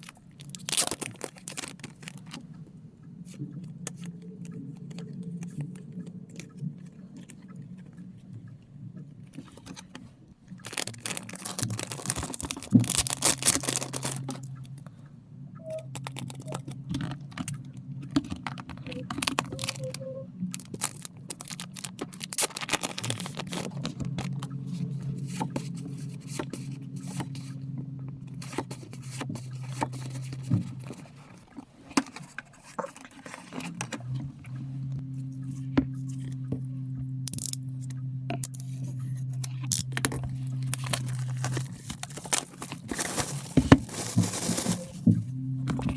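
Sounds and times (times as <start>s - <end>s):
packaging tearing and crinkling: 0.0s - 2.2s, 10.6s - 14.5s, 15.9s - 16.7s, 18.8s - 24.4s, 39.4s - 45.1s
low hum: 0.0s - 45.9s.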